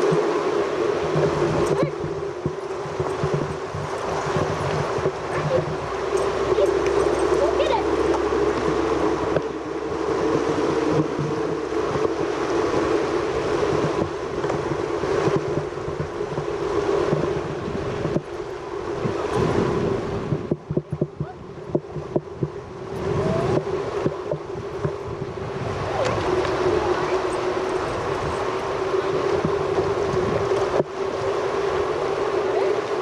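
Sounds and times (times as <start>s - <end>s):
stream flowing: 0.0s - 33.0s.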